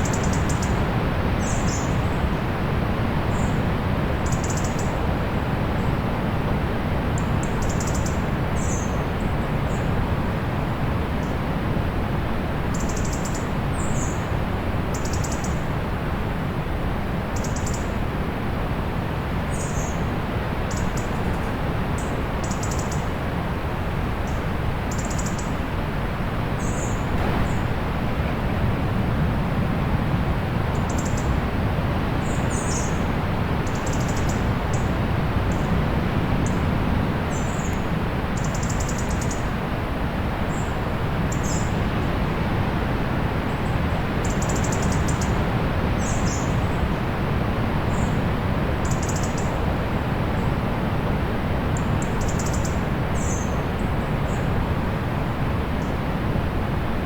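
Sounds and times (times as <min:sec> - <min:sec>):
distant sea surf: 0:25.6 - 0:57.0.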